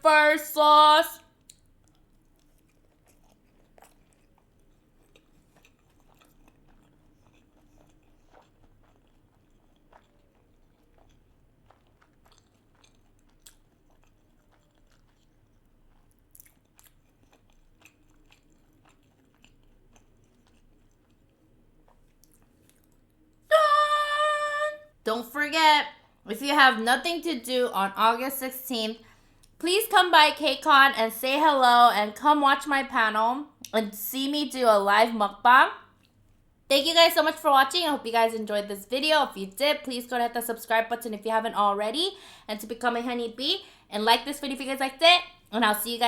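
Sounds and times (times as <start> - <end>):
chewing food: 1.2 - 24.0, 25.9 - 28.0, 29.0 - 29.6, 35.8 - 36.5.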